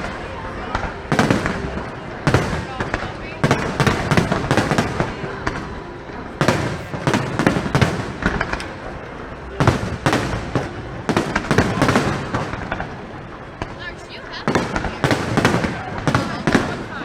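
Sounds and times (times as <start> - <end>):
fireworks bangs and crackles: 0.0 - 17.0.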